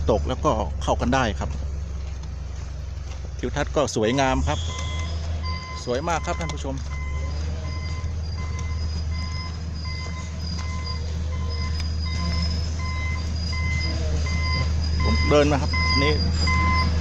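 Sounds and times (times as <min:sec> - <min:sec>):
diesel engine drone: 0:00.0 - 0:17.0
electronic warning beep: 0:04.0 - 0:17.0.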